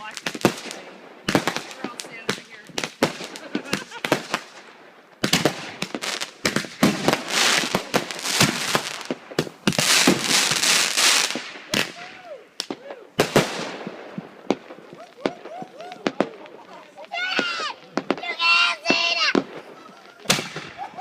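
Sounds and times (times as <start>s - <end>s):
fireworks hiss: 0.0s - 12.0s
fireworks bangs and crackling: 0.0s - 21.0s.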